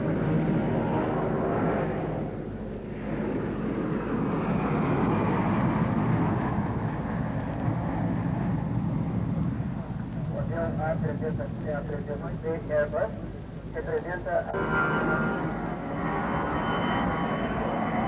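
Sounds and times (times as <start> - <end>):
jet engines running: 0.0 - 18.0.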